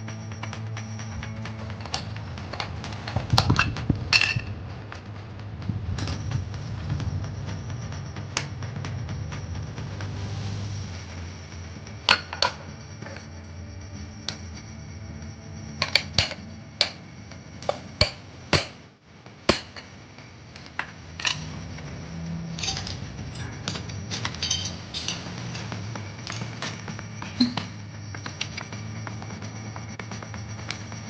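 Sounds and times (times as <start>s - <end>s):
steady low hum: 0.0s - 31.0s
hand tools knocking on metal: 1.2s - 4.6s, 22.6s - 27.8s.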